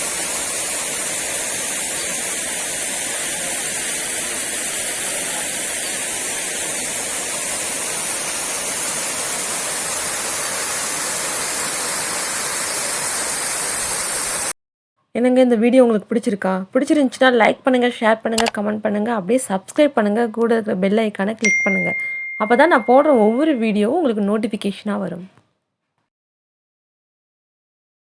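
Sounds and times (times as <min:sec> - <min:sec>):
waterfall splashing: 0:00.0 - 0:14.5.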